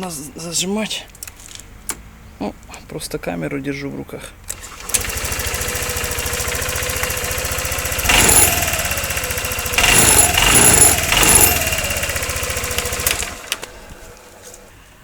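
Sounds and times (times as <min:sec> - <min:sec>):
scooter engine idling and revving: 0:04.5 - 0:14.8.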